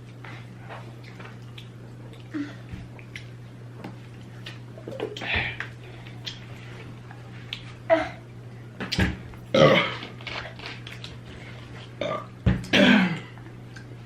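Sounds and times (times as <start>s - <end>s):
steady low hum: 0.0s - 14.0s
wet chewing and lip smacking: 1.0s - 2.3s.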